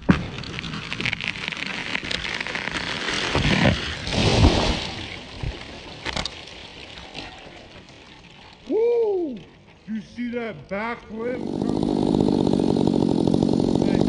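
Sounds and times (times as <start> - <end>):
tree branches cracking and crashing: 0.0 - 6.2.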